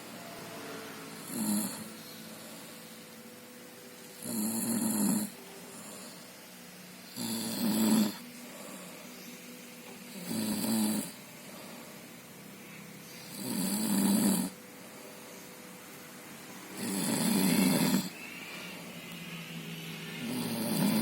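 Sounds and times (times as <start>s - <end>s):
loud rough snoring: 1.1s - 2.7s, 4.2s - 6.2s, 7.1s - 8.8s, 10.1s - 11.2s, 13.2s - 14.6s, 16.7s - 18.2s, 20.2s - 21.0s.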